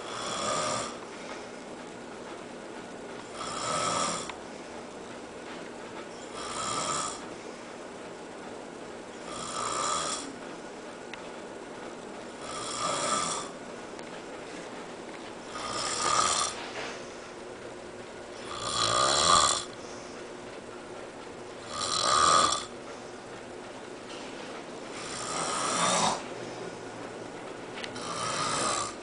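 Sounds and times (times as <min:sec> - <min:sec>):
snoring: 0:00.0 - 0:01.0, 0:03.3 - 0:04.4, 0:06.3 - 0:07.2, 0:09.2 - 0:10.3, 0:12.4 - 0:13.6, 0:15.5 - 0:16.6, 0:18.4 - 0:19.7, 0:21.6 - 0:22.7, 0:25.0 - 0:26.2, 0:28.0 - 0:29.0.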